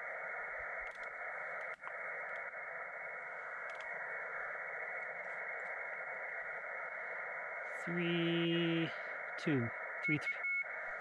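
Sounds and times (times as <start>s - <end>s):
radio receiver static hiss: 0.0s - 11.0s
faint clicks: 0.6s - 7.0s.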